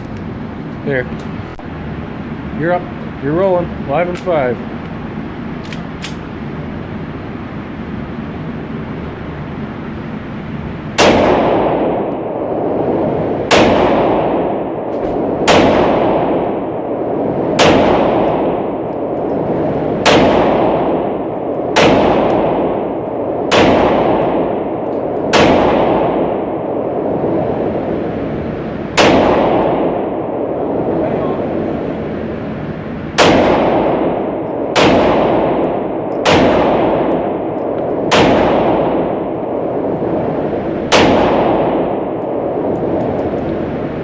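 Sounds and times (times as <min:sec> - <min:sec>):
gunshots with echoing tail: 0:10.9 - 0:32.5, 0:33.1 - 0:44.0.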